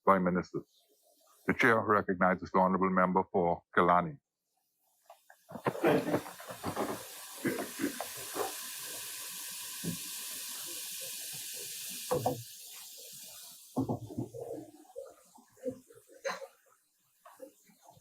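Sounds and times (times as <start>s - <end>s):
microphone hiss: 5.5s - 14.9s.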